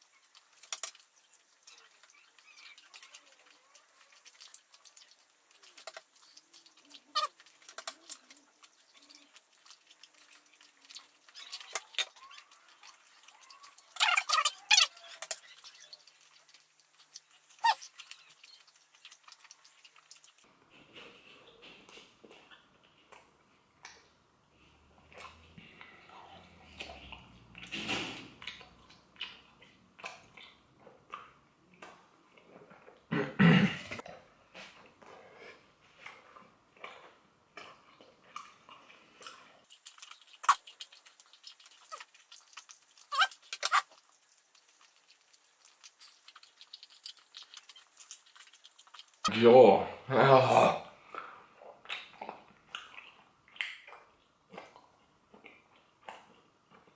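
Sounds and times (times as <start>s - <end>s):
wet chewing gum chewing: 0.0s - 33.0s, 34.0s - 49.3s
short squeaky sounds: 17.6s - 17.9s.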